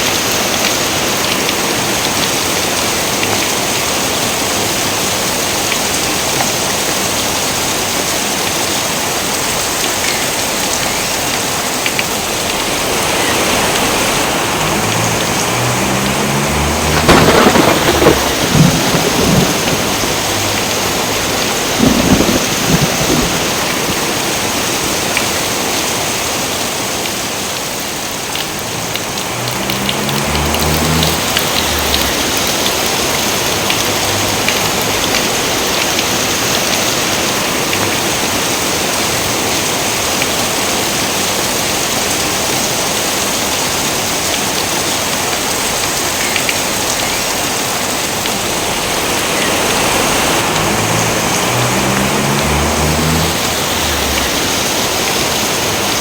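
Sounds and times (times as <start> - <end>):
steady rain falling: 0.0 - 56.0
low thunder rumble: 12.2 - 24.7, 28.5 - 35.4, 48.1 - 56.0
thunder crack: 12.4 - 24.7, 28.6 - 35.3, 48.1 - 55.8.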